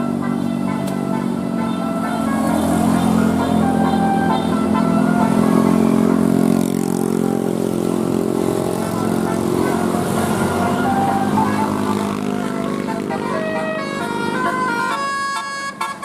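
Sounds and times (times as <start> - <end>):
musical bus horn tones: 0.0 - 16.0
vehicle noise: 0.0 - 16.0.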